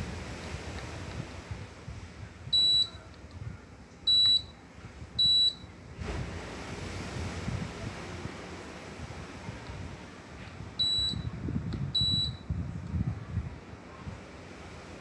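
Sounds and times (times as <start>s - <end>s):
air conditioner airflow hiss: 0.0s - 15.0s
air conditioner beeps: 2.4s - 5.9s, 10.7s - 12.8s.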